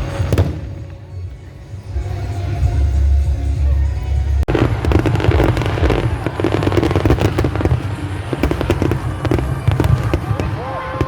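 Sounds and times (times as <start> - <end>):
fireworks booms: 0.0 - 1.4, 4.5 - 11.0
fireworks crackling: 0.0 - 11.0.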